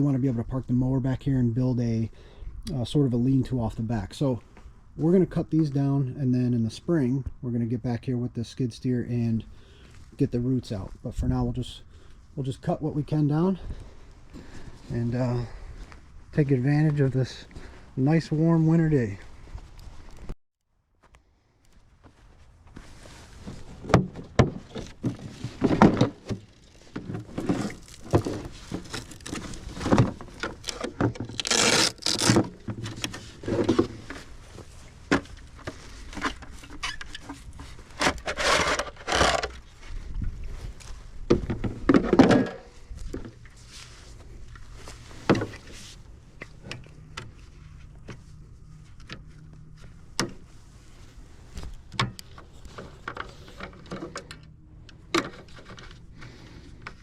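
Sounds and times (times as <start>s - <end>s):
wooden knocks and scraping: 23.4s - 34.3s, 35.0s - 39.6s, 41.2s - 43.6s.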